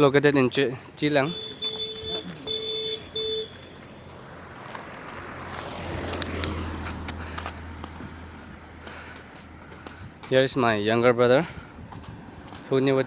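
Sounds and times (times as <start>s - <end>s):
short beeps: 1.3s - 3.6s
motor vehicle passing: 1.8s - 10.5s.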